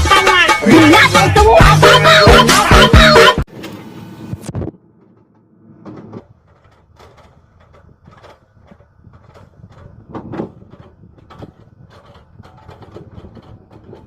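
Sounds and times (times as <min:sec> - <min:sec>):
excavator engine rumble: 0:00.0 - 0:14.0
knocks and clanks: 0:04.6 - 0:14.0.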